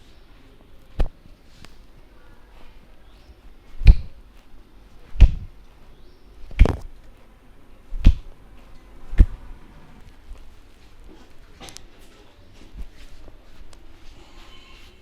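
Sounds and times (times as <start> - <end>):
hand strikes on head: 3.8 - 4.1, 5.2 - 5.5, 8.0 - 8.3.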